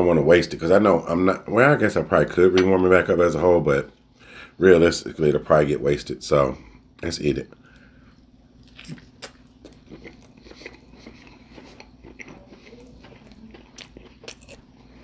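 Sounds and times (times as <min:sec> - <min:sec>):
chewing and biting food: 0:08.6 - 0:15.0.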